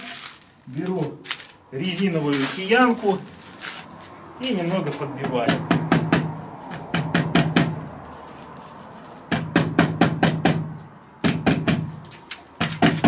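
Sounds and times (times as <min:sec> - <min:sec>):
rubber mallet tapping metal pipe: 0:05.4 - 0:07.9, 0:09.3 - 0:13.0.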